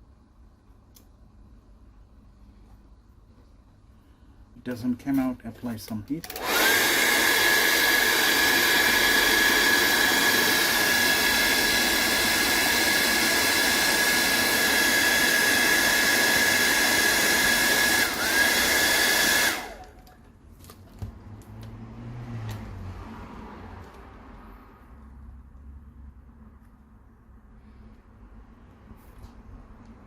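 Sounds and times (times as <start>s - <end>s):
hair dryer running: 6.2s - 20.2s.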